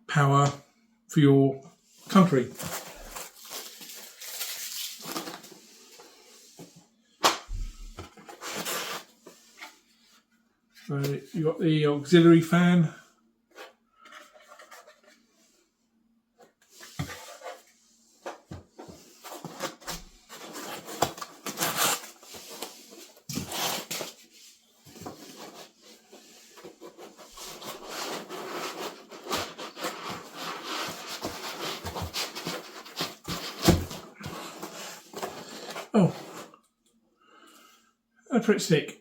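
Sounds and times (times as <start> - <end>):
packaging rustling: 2.5 - 5.6, 26.5 - 35.9.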